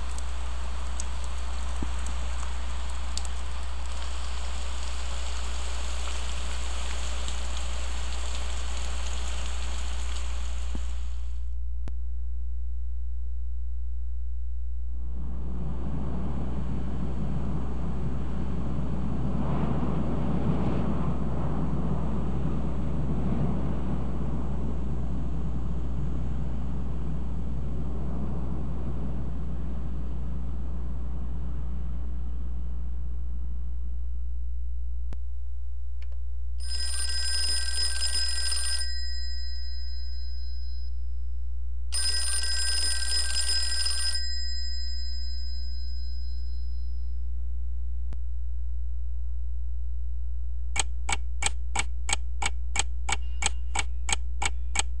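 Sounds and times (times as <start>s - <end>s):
noisy rumble: 0.0s - 36.6s, 44.2s - 55.0s
steady low hum: 0.0s - 36.7s, 38.8s - 42.0s, 44.2s - 55.0s
telephone bell ringing: 36.6s - 40.9s, 42.0s - 47.0s
sharp ticks: 50.8s - 55.0s.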